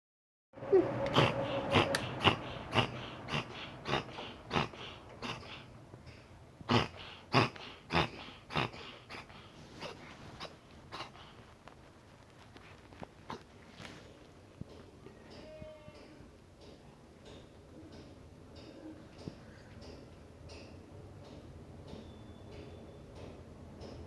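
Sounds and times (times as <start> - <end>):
pet hiccuping: 0.7 - 5.7, 6.7 - 11.4, 13.3 - 13.5.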